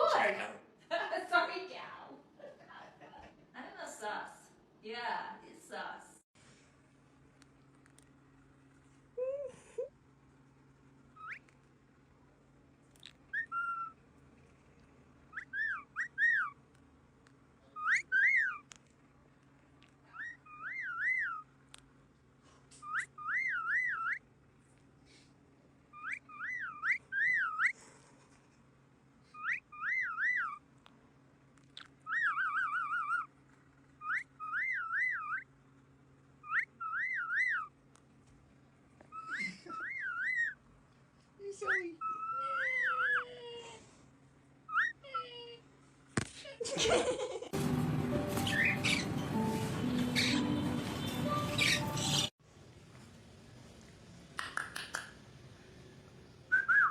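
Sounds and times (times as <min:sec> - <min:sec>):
parrot whistling: 0:13.3 - 0:14.0, 0:15.3 - 0:16.6, 0:17.8 - 0:18.6, 0:20.1 - 0:21.5, 0:22.8 - 0:24.2, 0:25.9 - 0:27.8, 0:29.4 - 0:30.6, 0:32.0 - 0:33.3, 0:34.0 - 0:35.5, 0:36.4 - 0:37.7, 0:39.1 - 0:40.6, 0:41.6 - 0:43.3, 0:44.7 - 0:45.0, 0:48.3 - 0:52.3, 0:56.5 - 0:56.9.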